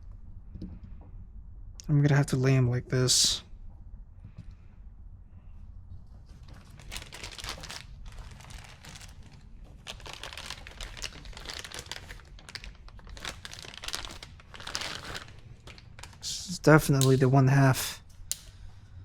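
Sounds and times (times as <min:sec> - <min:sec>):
packaging crinkling and rustling: 0:06.2 - 0:17.2.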